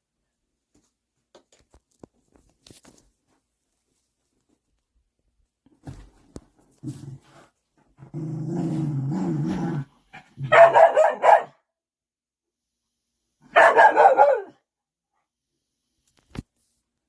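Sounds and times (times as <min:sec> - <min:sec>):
dog growling: 0:08.0 - 0:10.4
dog barking: 0:10.4 - 0:11.7, 0:13.5 - 0:14.6.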